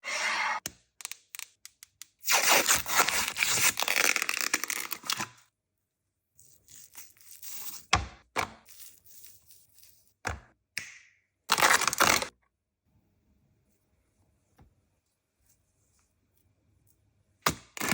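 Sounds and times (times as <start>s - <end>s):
packaging tearing and crinkling: 2.2s - 5.3s, 11.5s - 12.3s.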